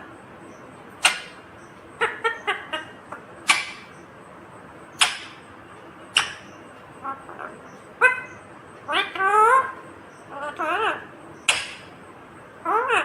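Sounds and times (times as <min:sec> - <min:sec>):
parakeet chattering: 0:00.5 - 0:04.1, 0:04.9 - 0:05.5, 0:06.1 - 0:12.0, 0:12.6 - 0:13.0
parakeet screeching: 0:06.2 - 0:11.9.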